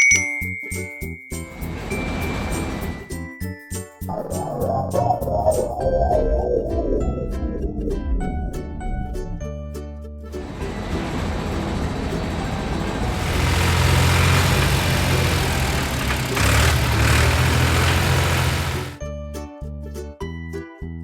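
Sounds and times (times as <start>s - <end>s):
music: 0.0s - 15.0s, 18.9s - 21.0s
heavy vehicle engine rumble: 1.6s - 3.1s, 10.4s - 19.0s.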